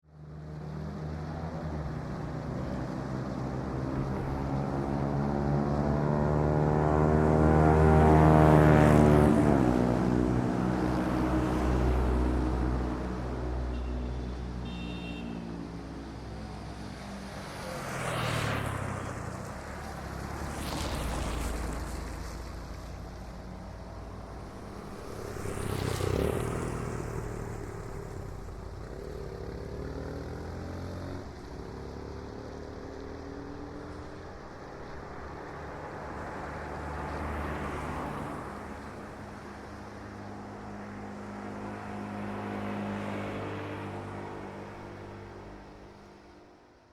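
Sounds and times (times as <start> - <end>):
motorcycles passing by: 0.6 - 46.5.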